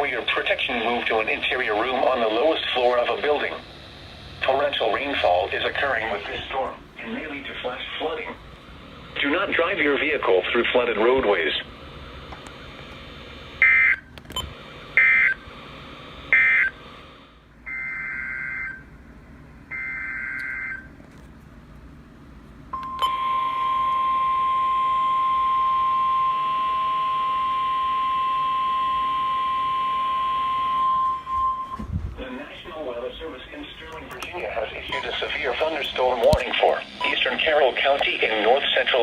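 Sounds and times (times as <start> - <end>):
steady alert tone: 34.9 - 37.6.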